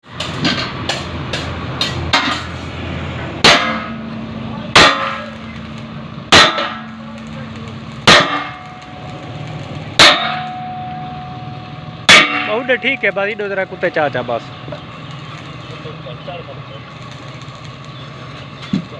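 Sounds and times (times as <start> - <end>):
hammer striking metal: 0.1 - 2.7, 3.4 - 14.2.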